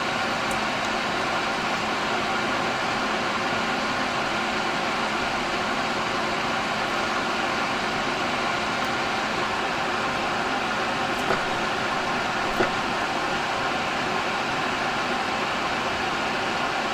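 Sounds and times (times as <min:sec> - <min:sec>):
electric blower hissing: 0:10.0 - 0:13.8.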